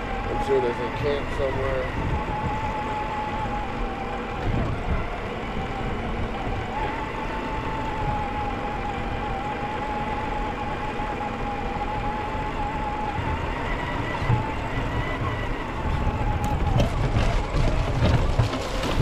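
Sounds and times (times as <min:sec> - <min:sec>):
electric motor whining: 0:00.0 - 0:19.0
low rumble from tyres: 0:00.0 - 0:19.0.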